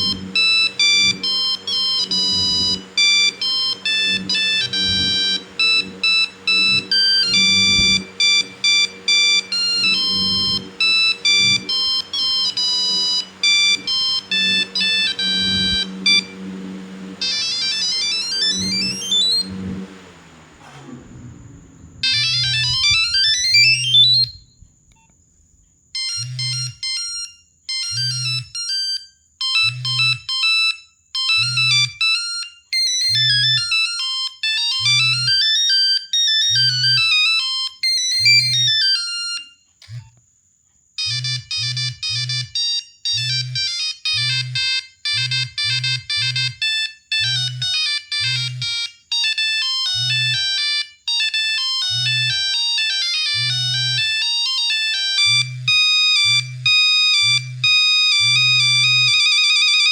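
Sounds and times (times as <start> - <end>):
monophonic beeping ringtone: 0.0 - 16.4, 17.2 - 19.5, 22.0 - 24.4, 41.0 - 59.9
low pulsing buzz: 0.0 - 25.0, 53.3 - 54.3, 55.0 - 59.4.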